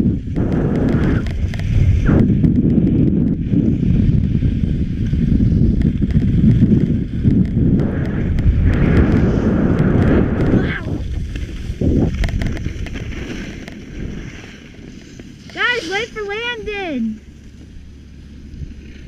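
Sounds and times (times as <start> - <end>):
wind buffeting microphone: 0.0 - 19.0
skis hissing over snow: 3.7 - 7.2, 7.8 - 19.0.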